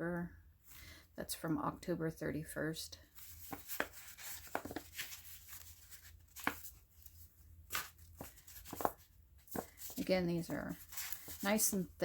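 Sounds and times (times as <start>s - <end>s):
paper crackling and rustling: 3.2s - 12.0s.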